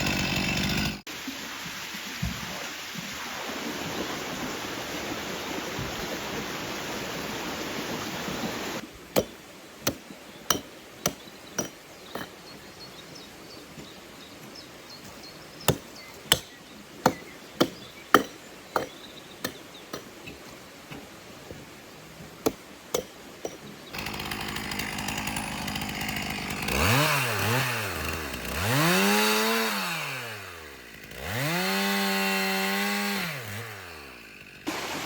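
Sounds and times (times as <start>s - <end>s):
sharp striking blows: 15.7s - 20.1s.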